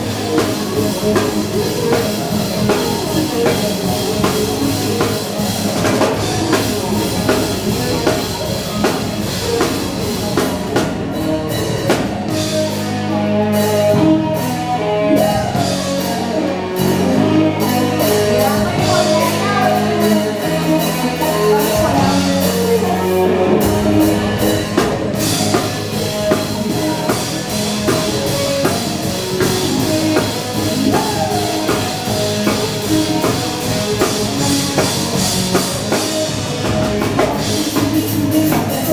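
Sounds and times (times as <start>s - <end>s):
bass and guitar: 0.0s - 38.9s
drum kit beat: 0.0s - 38.9s
person singing: 12.6s - 38.9s.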